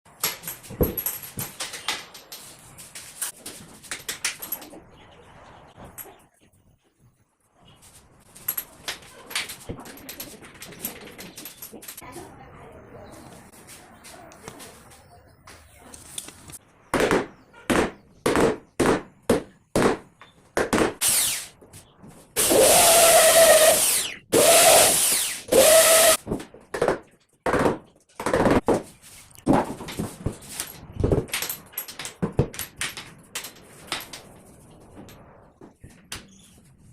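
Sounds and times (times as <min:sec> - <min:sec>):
power drill boring into wood: 0:21.0 - 0:21.5, 0:22.4 - 0:26.2.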